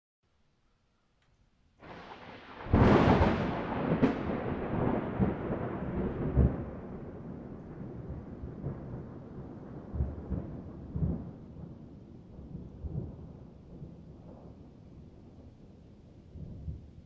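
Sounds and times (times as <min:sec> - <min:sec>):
thunder cracks: 0:01.8 - 0:14.7
rolling thunder rumble: 0:01.8 - 0:17.0.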